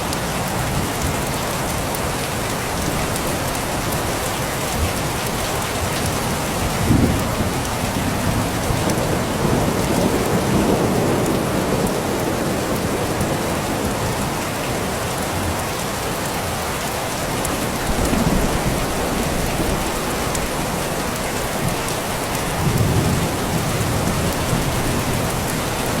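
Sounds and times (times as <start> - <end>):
steady rain falling: 0.0 - 26.0
distant thunder rumbling: 6.2 - 14.4, 17.6 - 26.0.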